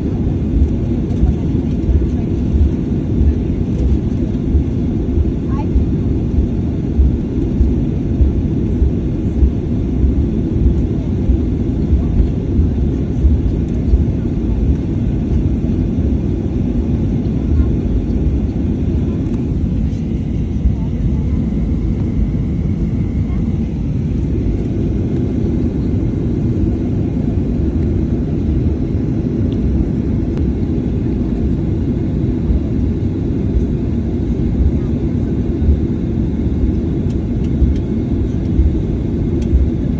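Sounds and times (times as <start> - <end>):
airplane cabin rumble: 0.0 - 39.9
low thumps: 1.9 - 14.2.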